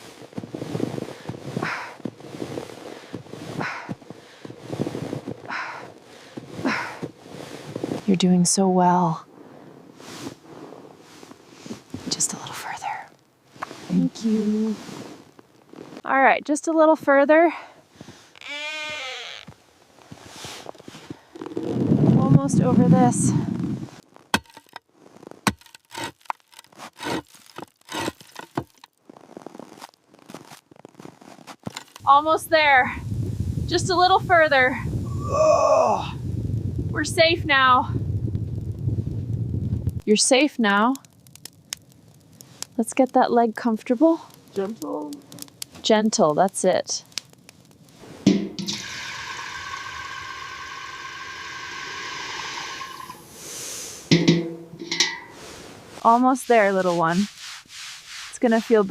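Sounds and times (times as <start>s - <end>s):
heavy footsteps in snow: 0.0s - 8.1s, 19.8s - 24.0s, 29.0s - 31.7s
animal dragged through snow: 0.0s - 8.2s, 10.0s - 12.4s, 13.5s - 16.2s, 19.8s - 24.0s, 48.9s - 54.1s, 55.3s - 58.9s
steady rushing hiss: 46.6s - 58.9s.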